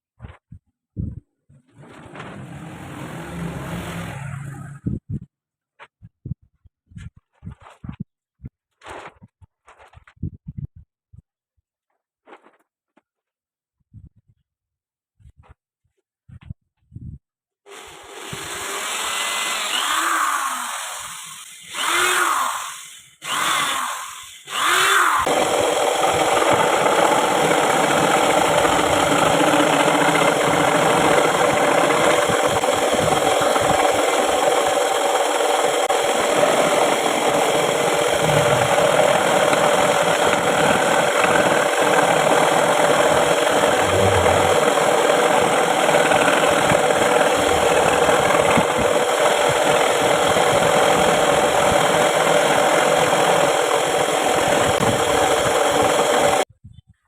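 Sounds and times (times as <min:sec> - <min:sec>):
scroll saw cutting wood: 0:01.7 - 0:04.8, 0:17.7 - 0:56.5.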